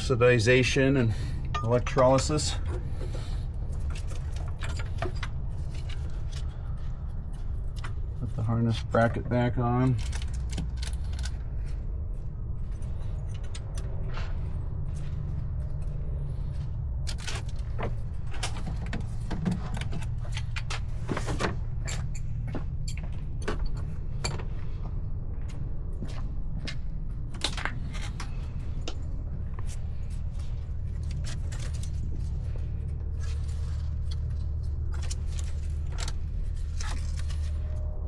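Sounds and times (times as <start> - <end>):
steady low hum: 0.0 - 38.0
hand tools clicking and clinking: 1.4 - 6.4.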